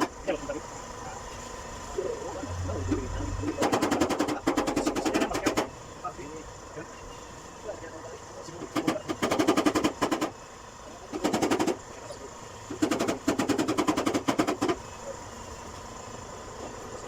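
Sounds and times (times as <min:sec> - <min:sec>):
power tool hammering: 0:00.0 - 0:00.3, 0:02.9 - 0:05.8, 0:08.6 - 0:10.4, 0:11.1 - 0:11.9, 0:12.7 - 0:14.8.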